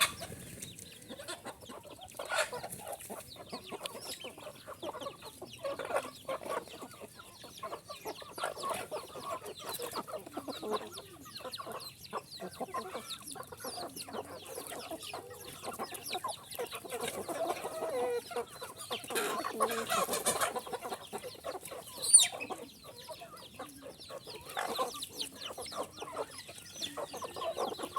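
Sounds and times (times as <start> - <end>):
loud high-pitched chicken call: 0.0 - 0.4
chickens clucking: 0.0 - 27.9.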